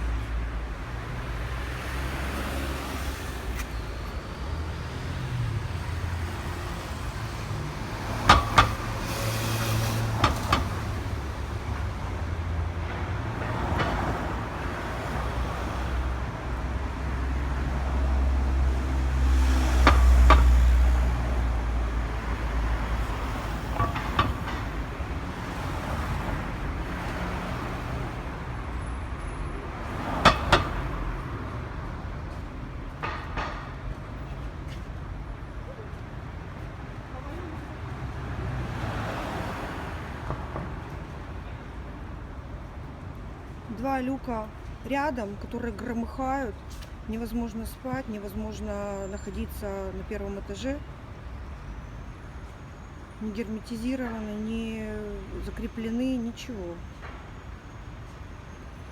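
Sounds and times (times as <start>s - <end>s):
passing traffic rumble: 0.0s - 58.9s
manhole covers clanking: 5.9s - 12.1s, 18.7s - 28.2s, 29.2s - 34.4s.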